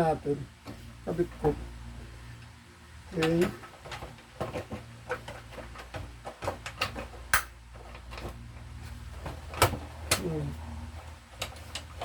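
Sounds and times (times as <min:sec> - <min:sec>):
low steady hum: 0:00.0 - 0:12.0
plastic parts clicking and knocking: 0:03.2 - 0:08.4, 0:09.2 - 0:10.4, 0:11.2 - 0:12.0.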